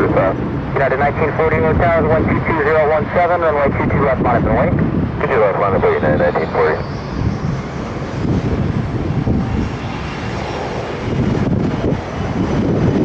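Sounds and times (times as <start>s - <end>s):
jet engines rumbling: 0.0s - 13.0s.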